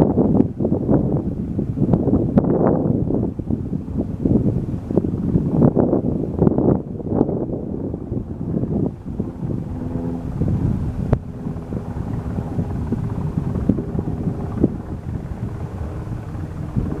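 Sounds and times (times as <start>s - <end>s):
distant small plane engine drone: 0.0s - 17.0s
wind buffeting microphone: 0.0s - 17.0s.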